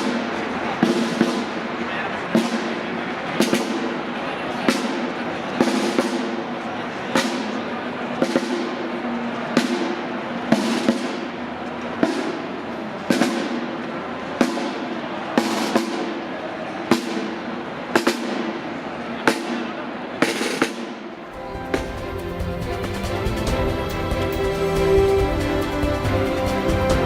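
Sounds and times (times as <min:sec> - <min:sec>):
slow processional music: 0:21.2 - 0:27.0
music with heavy bass: 0:21.4 - 0:27.0.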